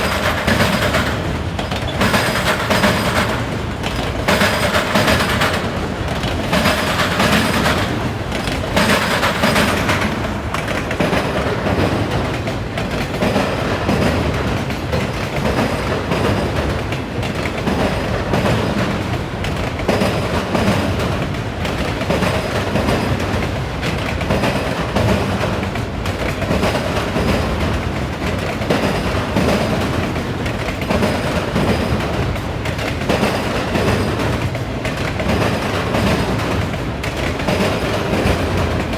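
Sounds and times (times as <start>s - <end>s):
train wheels banging over crossing: 0.0s - 38.9s.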